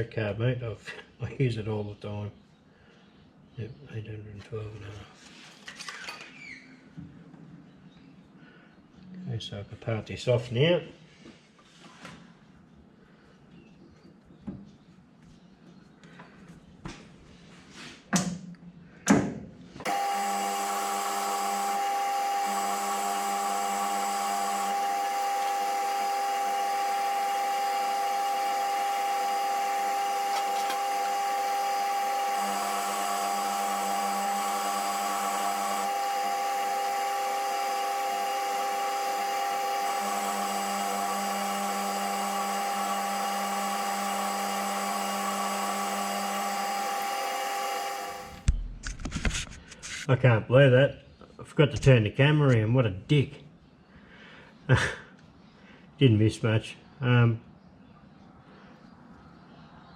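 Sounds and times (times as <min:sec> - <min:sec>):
metal lathe whining: 0:19.8 - 0:48.6.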